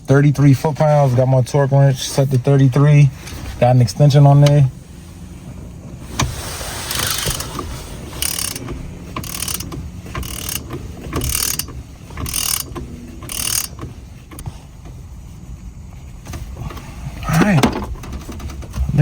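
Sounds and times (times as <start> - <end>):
torque wrench ratcheting: 6.9 - 7.6, 8.2 - 14.4.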